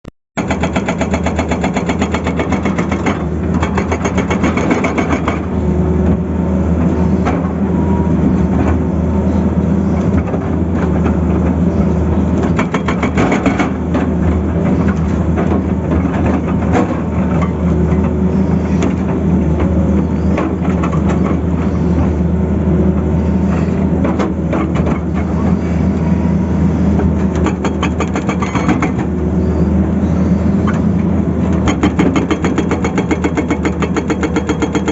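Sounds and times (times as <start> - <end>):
excavator diesel engine running: 0.4 - 34.9
hydraulic breaker hammering: 31.6 - 34.9.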